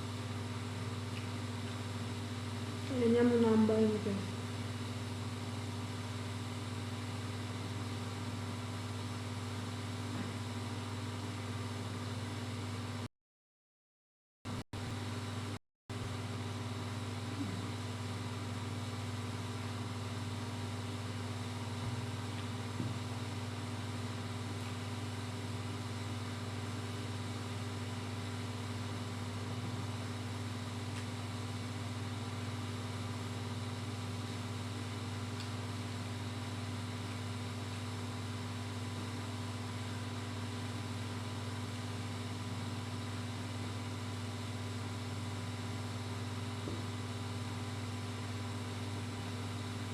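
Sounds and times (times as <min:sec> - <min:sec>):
steady low hum: 0:00.0 - 0:13.1, 0:14.8 - 0:49.9.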